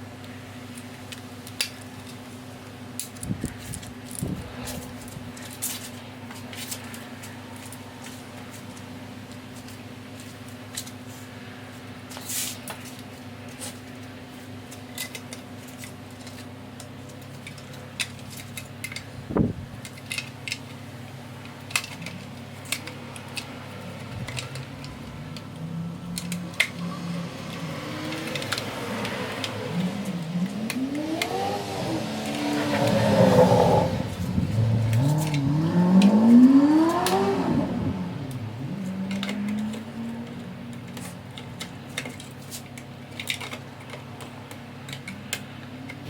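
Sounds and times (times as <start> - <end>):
car engine revving: 23.4 - 40.7.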